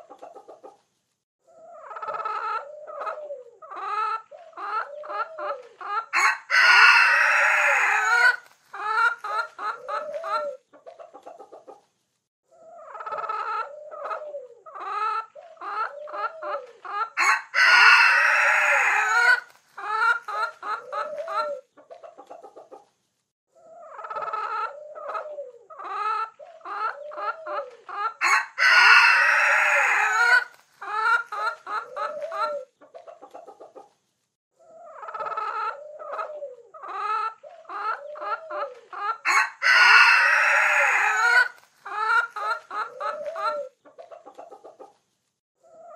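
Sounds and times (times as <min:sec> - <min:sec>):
hens clucking: 0:00.0 - 0:00.9, 0:01.5 - 0:11.9, 0:12.5 - 0:34.0, 0:34.6 - 0:45.9
rooster crowing loudly: 0:06.1 - 0:08.4, 0:17.2 - 0:20.0, 0:28.2 - 0:31.0, 0:39.2 - 0:42.1.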